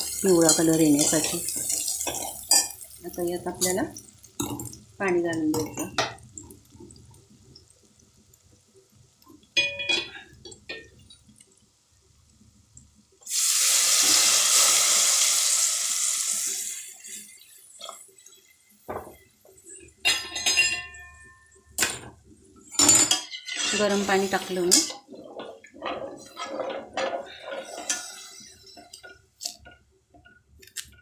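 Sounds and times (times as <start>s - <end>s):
metal pots and utensils clinking: 0.0s - 6.3s, 9.6s - 11.2s, 17.8s - 30.9s
water sizzling in hot oil: 0.0s - 31.0s.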